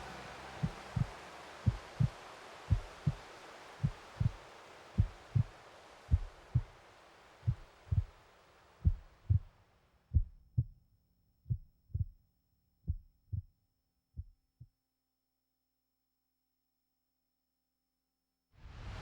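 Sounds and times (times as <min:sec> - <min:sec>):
slow heartbeat thumps: 0:00.0 - 0:04.4, 0:05.0 - 0:06.8, 0:07.4 - 0:08.2, 0:08.8 - 0:10.8, 0:11.5 - 0:12.2, 0:12.9 - 0:13.5, 0:14.2 - 0:14.6
steady hiss: 0:00.0 - 0:10.1, 0:18.6 - 0:19.0.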